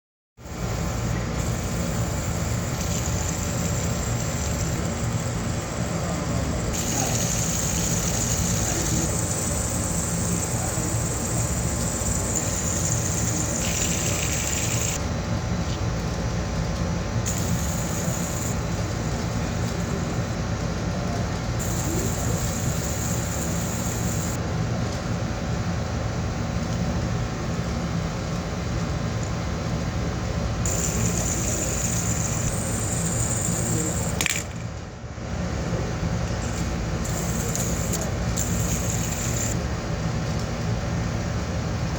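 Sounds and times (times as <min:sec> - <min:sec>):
fidget spinner whirring: 0:00.4 - 0:15.0, 0:17.3 - 0:20.4, 0:21.6 - 0:24.4, 0:30.6 - 0:34.7, 0:36.4 - 0:39.6.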